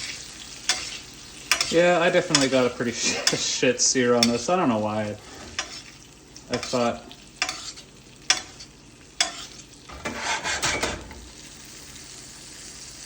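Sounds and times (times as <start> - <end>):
steak sizzling in a frying pan: 0.0 - 13.0
metal utensil clicking on pan: 0.6 - 2.6, 4.2 - 4.4, 7.4 - 9.6
utensil scraping and clattering: 5.2 - 11.2.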